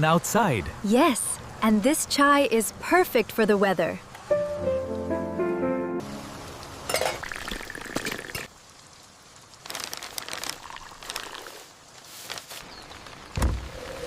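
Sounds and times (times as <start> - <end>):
glass cups and dishes clinking: 6.9 - 8.5.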